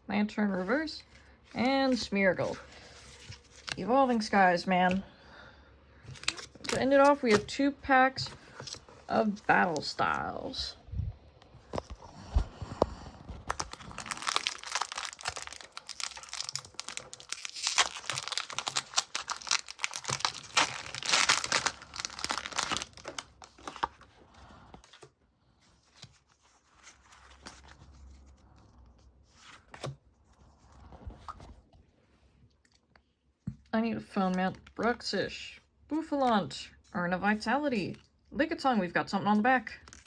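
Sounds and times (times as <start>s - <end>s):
foil wrapper tearing and crinkling: 13.4s - 24.0s.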